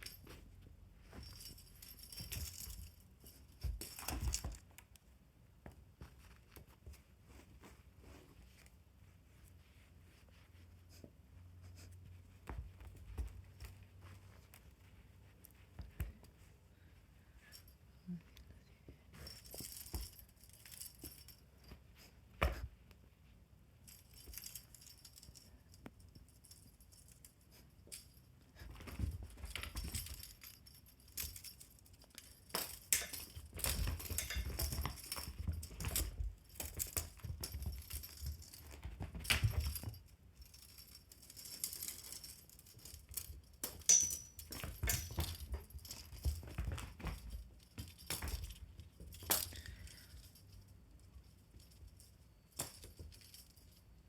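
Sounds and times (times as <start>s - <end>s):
pets thumping and scuffling: 0.0s - 4.8s, 28.6s - 31.6s, 32.5s - 42.4s, 43.1s - 49.4s
toy jingling and rattling: 1.0s - 4.7s, 19.1s - 22.1s, 23.8s - 54.0s.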